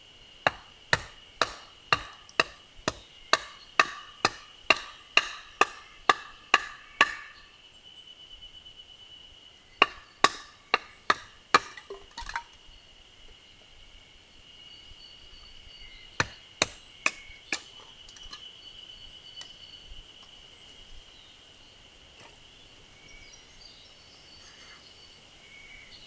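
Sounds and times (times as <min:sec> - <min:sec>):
tool knocking firewood: 0:00.4 - 0:07.4, 0:09.8 - 0:12.5, 0:16.2 - 0:18.3.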